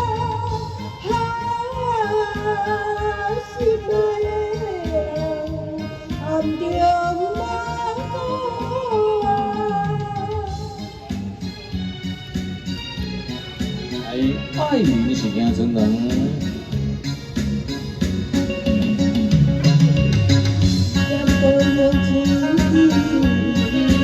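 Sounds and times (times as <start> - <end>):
woman singing a slow ballad: 0.0 - 11.2, 21.0 - 24.0
backing track with guitar: 0.0 - 24.0.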